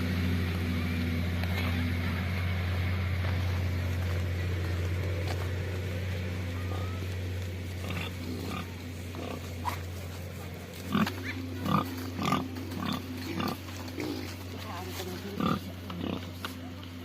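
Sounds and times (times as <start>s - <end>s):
low hum: 0.0s - 17.0s
pig grunting: 6.6s - 16.8s.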